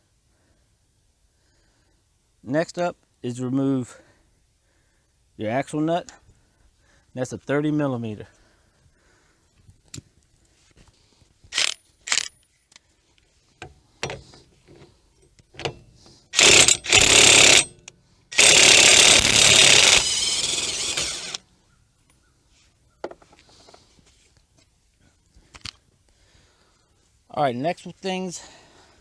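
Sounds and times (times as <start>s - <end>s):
impact wrench hammering: 16.4s - 21.4s.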